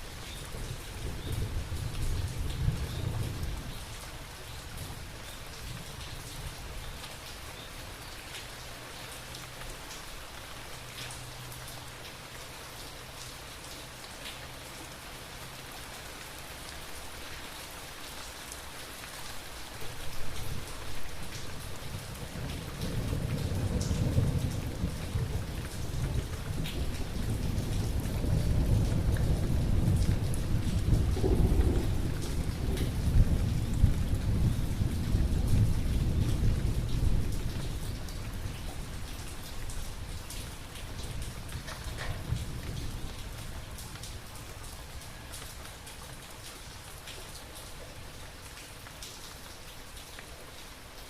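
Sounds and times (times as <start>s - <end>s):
steady rain falling: 0.0s - 51.0s
rolling thunder: 22.0s - 38.9s.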